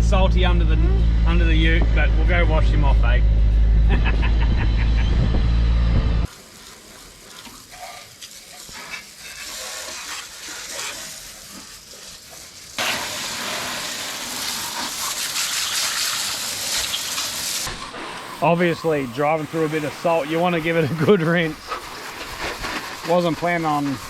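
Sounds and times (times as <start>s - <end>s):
hose spraying water: 6.3s - 24.0s.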